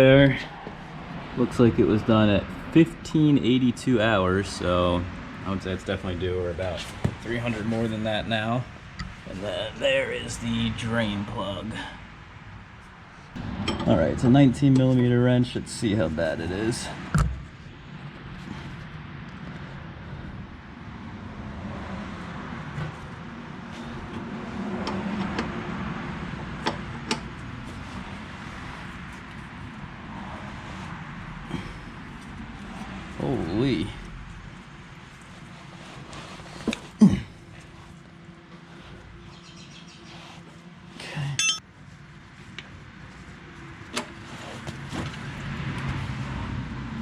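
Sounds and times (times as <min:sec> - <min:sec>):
metallic clink: 0:41.4 - 0:41.6.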